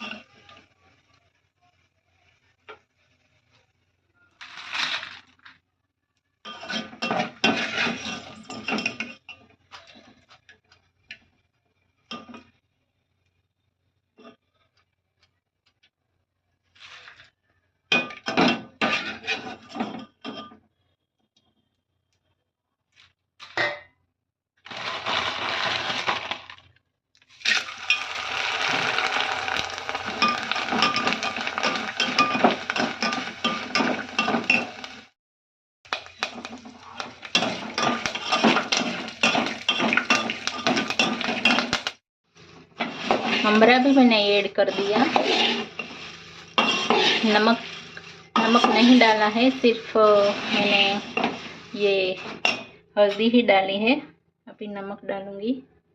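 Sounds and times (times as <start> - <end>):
metal spoon scraping a pan: 0.0 - 0.5, 6.5 - 10.4, 17.9 - 20.6, 27.9 - 35.1, 35.9 - 41.9, 42.6 - 53.3
puffed rice rattling in metal pan: 4.4 - 5.4, 24.7 - 26.6, 27.7 - 34.8.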